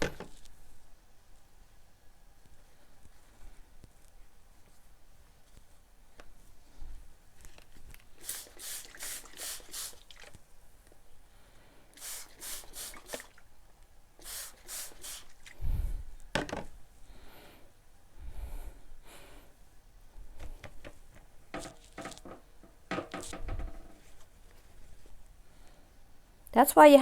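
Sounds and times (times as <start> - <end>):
spray bottle squirting: 8.1 - 10.4, 12.0 - 13.4, 14.2 - 15.6, 20.7 - 24.1
handling bumps and knocks: 20.4 - 24.2.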